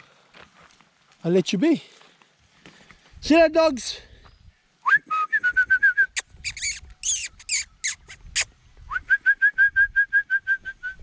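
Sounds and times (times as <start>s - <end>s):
person whistling for dogs: 4.8s - 8.0s, 8.9s - 11.0s.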